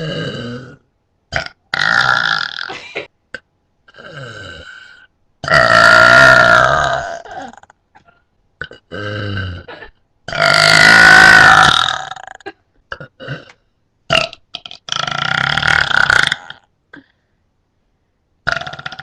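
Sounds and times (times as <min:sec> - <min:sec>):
person burping: 0:00.0 - 0:17.2, 0:18.4 - 0:19.0.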